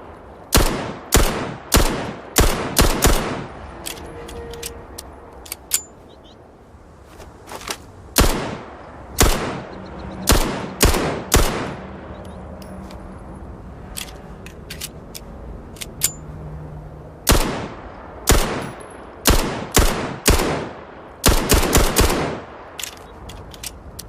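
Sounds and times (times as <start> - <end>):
pistol shots: 0.5 - 3.5, 8.2 - 9.7, 10.3 - 11.8, 17.3 - 22.5
light clicks: 22.8 - 24.0.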